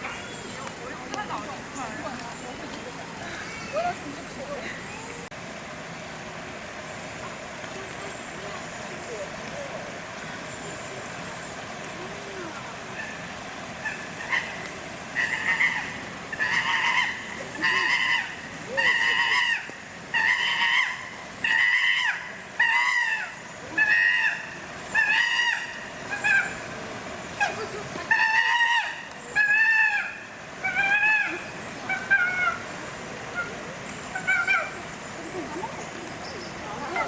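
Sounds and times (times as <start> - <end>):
outdoor background noise: 0.0 - 37.0
chimpanzee calling: 12.9 - 26.7, 27.3 - 37.0.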